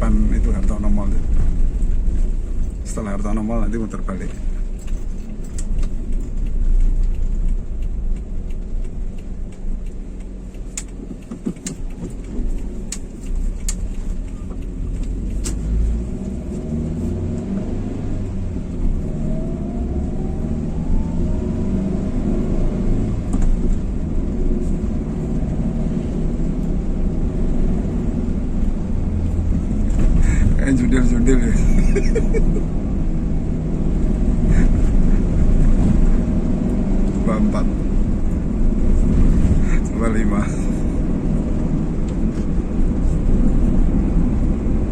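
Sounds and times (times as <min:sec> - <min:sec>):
car engine and road rumble: 0:00.0 - 0:44.9
light ticks: 0:01.6 - 0:20.4
engine revving whine: 0:12.0 - 0:44.9.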